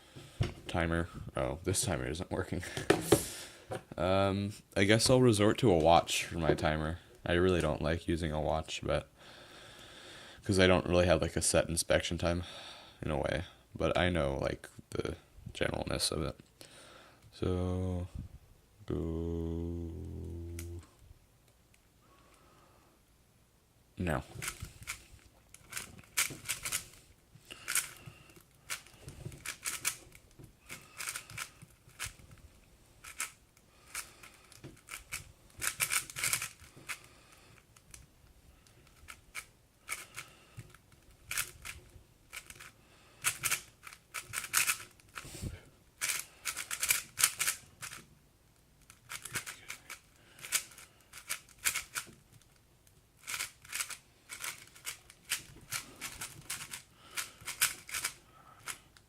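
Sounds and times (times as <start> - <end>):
plastic puzzle cube clicking: 24.4 - 27.0, 27.6 - 32.4, 33.0 - 38.0, 38.6 - 45.3, 46.0 - 48.1, 48.8 - 59.0.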